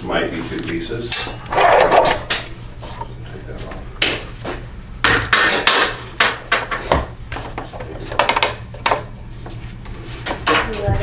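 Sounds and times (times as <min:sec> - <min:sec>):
metal mower parts clanking: 0:01.1 - 0:03.1.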